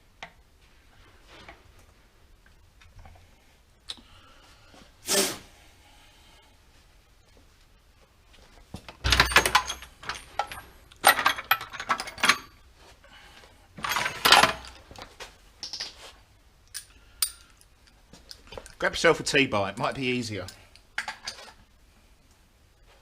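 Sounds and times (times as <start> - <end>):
metal hand tools clinking: 9.1 - 12.6, 16.7 - 18.0.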